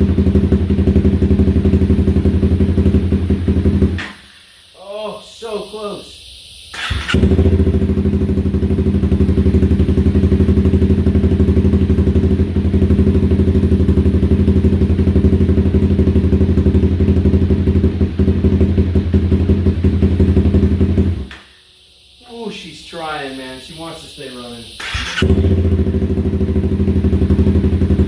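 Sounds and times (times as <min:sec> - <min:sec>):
motorcycle engine idling: 0:00.0 - 0:04.1, 0:06.8 - 0:21.4, 0:24.7 - 0:28.0.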